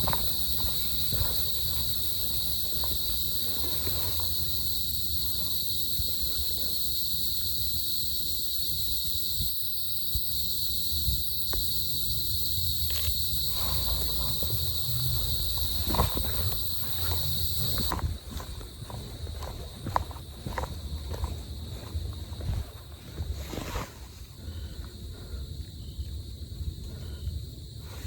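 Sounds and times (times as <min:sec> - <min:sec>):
insects droning: 0:00.0 - 0:28.0
low rumble: 0:12.5 - 0:18.4.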